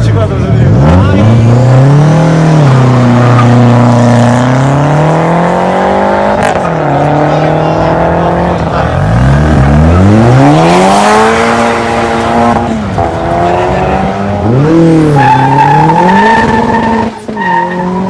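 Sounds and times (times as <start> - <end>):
car engine revving hard: 0.4 - 18.0
tyres squealing: 15.0 - 18.0.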